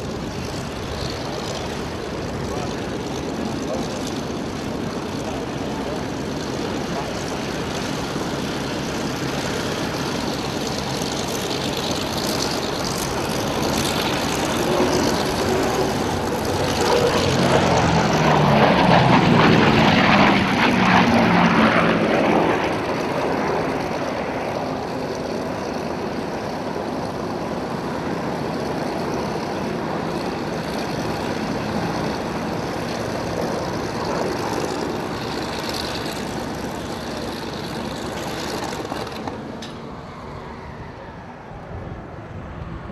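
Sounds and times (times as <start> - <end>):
propeller plane engines droning: 0.0 - 42.9.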